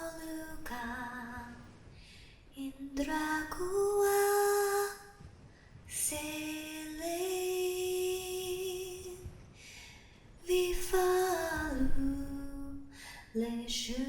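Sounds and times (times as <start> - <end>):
woman singing lullaby: 0.0 - 1.7, 5.9 - 9.3, 10.4 - 14.0.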